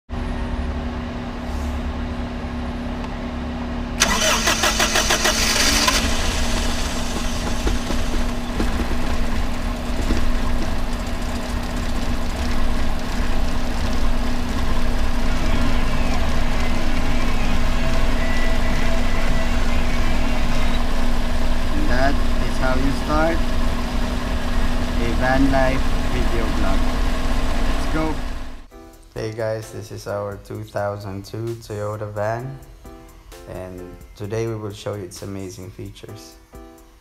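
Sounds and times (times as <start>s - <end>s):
steady hum: 0.3s - 28.7s
van engine idling: 3.6s - 28.7s
starter motor cranking: 4.0s - 28.7s.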